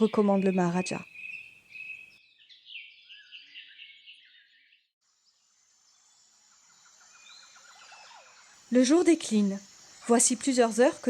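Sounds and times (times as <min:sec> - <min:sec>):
bird chirps: 0:00.0 - 0:04.9, 0:05.9 - 0:11.0
scattered bird calls: 0:00.0 - 0:04.9, 0:06.4 - 0:11.0
insects: 0:05.0 - 0:11.0.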